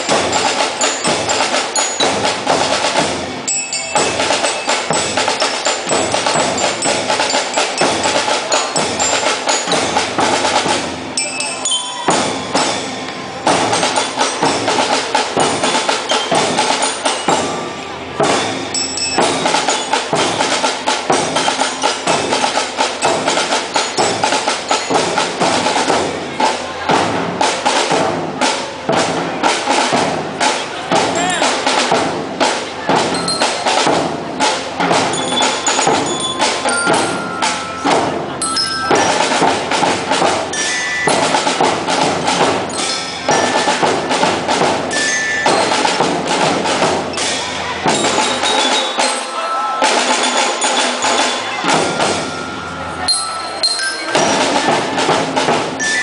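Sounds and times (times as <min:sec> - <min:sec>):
fast drum strokes: 0:00.0 - 0:56.0
marching band playing: 0:00.0 - 0:56.0.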